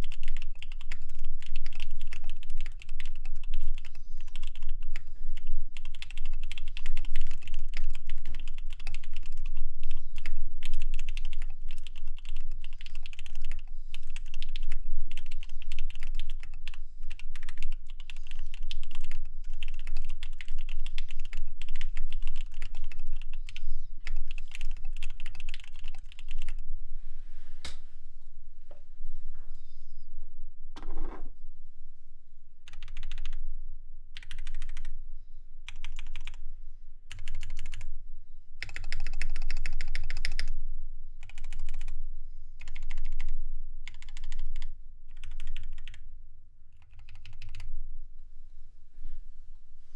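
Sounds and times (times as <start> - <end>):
fast typing on mechanical keyboard: 0.0 - 26.6, 32.7 - 33.4, 34.2 - 34.9, 35.7 - 36.4, 37.1 - 37.9, 38.6 - 40.5, 41.2 - 42.0, 42.6 - 43.3, 43.9 - 46.0, 46.8 - 47.7.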